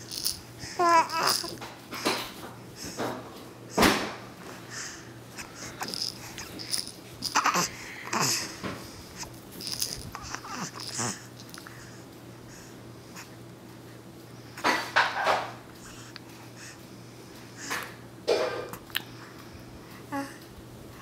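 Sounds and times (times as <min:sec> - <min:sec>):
baby wheezy vocal sounds: 0:04.7 - 0:08.6, 0:09.7 - 0:11.3.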